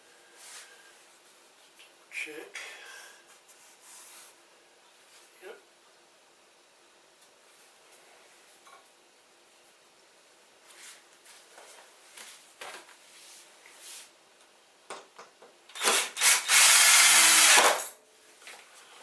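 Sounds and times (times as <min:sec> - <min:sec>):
power drill driving a screw: 0:15.7 - 0:17.9.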